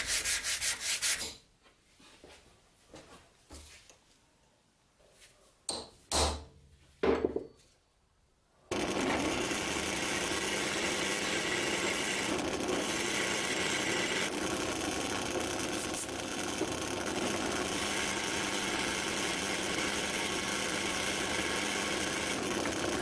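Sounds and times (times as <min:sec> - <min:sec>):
sharp knocks of tools: 0:05.7 - 0:07.6
power tool running: 0:08.7 - 0:23.0.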